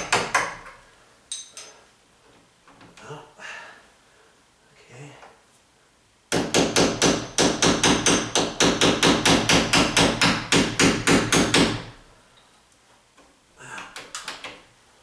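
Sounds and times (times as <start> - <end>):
rapid hard knocks: 6.3 - 12.0.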